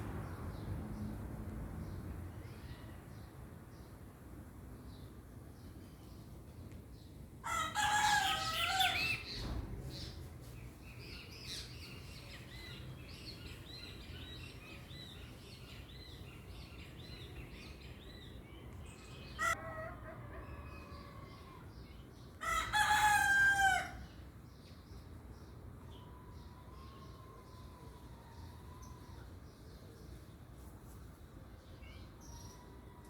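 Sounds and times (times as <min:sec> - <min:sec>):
rooster crowing: 0:07.4 - 0:09.3, 0:22.4 - 0:24.0.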